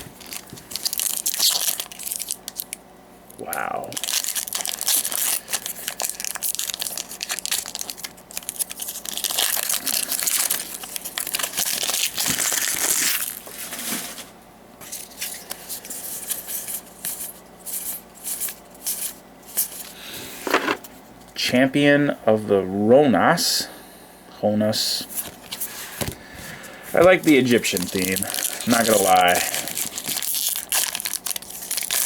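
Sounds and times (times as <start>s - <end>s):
foil wrapper crinkling: 0.0s - 2.8s, 4.0s - 14.3s, 26.9s - 32.0s.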